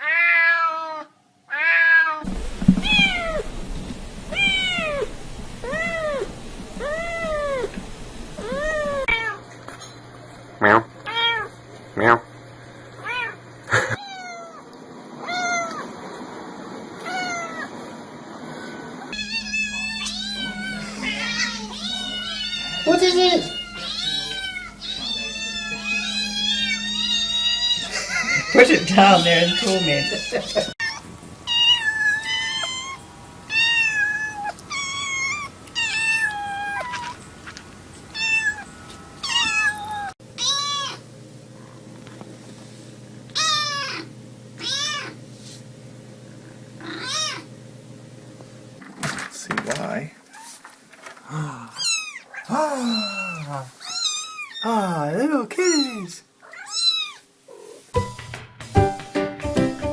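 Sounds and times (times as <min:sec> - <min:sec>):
cat meowing: 0:00.0 - 0:02.2, 0:02.8 - 0:03.4, 0:04.3 - 0:07.7, 0:08.4 - 0:09.4, 0:13.0 - 0:14.6, 0:15.2 - 0:15.9, 0:17.0 - 0:17.7, 0:19.1 - 0:28.6, 0:29.2 - 0:37.2, 0:38.1 - 0:41.0, 0:43.3 - 0:45.2, 0:46.8 - 0:47.5, 0:51.7 - 0:54.7, 0:55.6 - 0:57.7.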